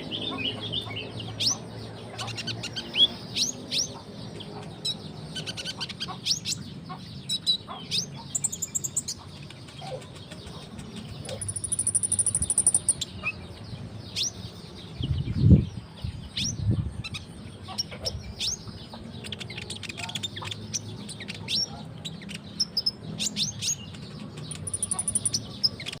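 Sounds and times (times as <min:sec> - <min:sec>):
bird chirping: 0:00.0 - 0:26.0
fast high bird trill: 0:11.2 - 0:13.1, 0:24.5 - 0:26.0.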